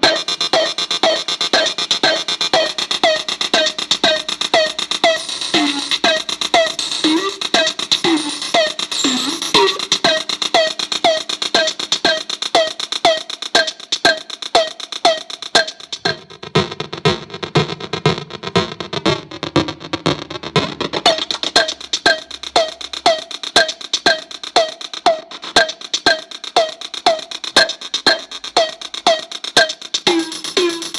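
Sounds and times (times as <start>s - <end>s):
glitchy clicks: 0.0s - 10.4s.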